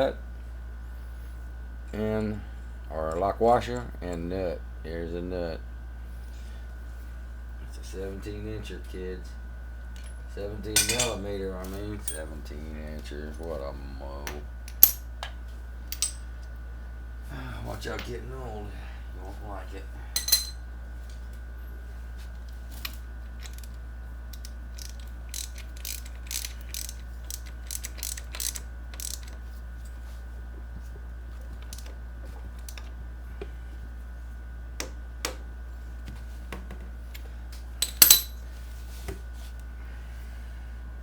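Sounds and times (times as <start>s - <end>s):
wrench clicking: 24.4s - 29.4s.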